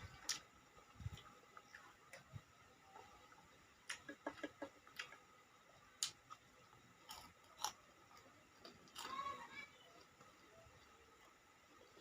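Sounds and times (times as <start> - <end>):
eating clicks and smacks: 3.8 - 5.2.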